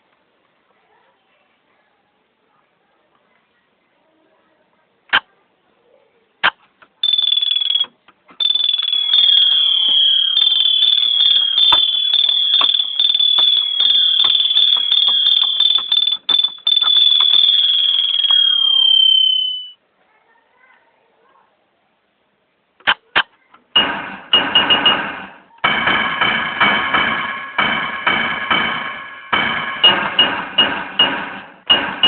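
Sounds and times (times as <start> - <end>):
high piercing ringing tone: 7.0 - 19.8
typewriter-like clacks: 10.3 - 17.6, 23.8 - 32.0.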